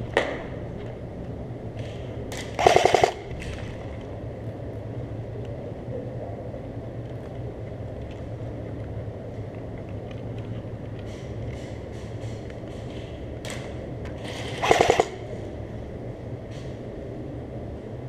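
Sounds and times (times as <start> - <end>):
airsoft rifle full-auto burst: 2.6 - 3.3, 14.3 - 15.3.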